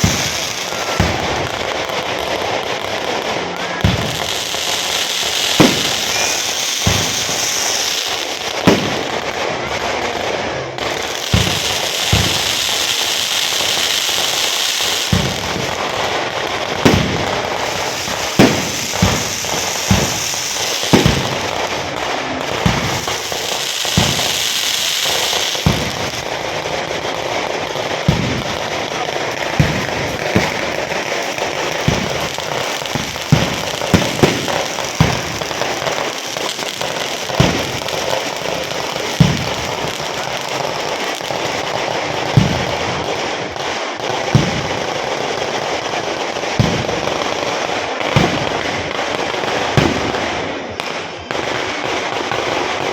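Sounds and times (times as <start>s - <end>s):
firecrackers banging: 0.0s - 52.9s
high hissing: 4.7s - 8.6s.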